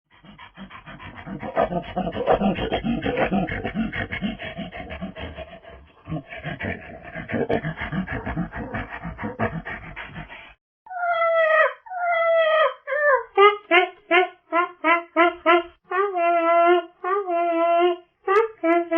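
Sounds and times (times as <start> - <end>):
monkey pulsing grunts: 0.1 - 10.6.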